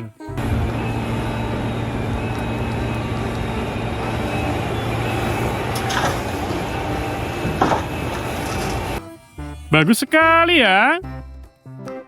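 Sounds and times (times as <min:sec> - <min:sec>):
toy vehicle engine-like hum: 0:00.0 - 0:09.0.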